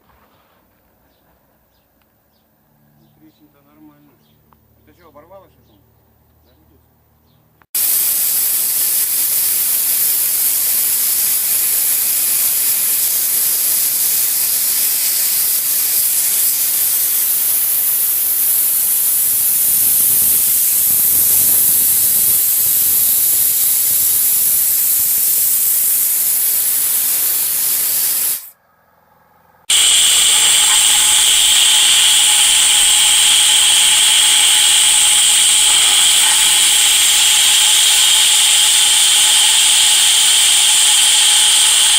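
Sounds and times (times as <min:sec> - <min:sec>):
compressed air jet hissing: 0:07.8 - 0:28.5, 0:29.7 - 0:41.9
power tool high whine: 0:29.7 - 0:41.9.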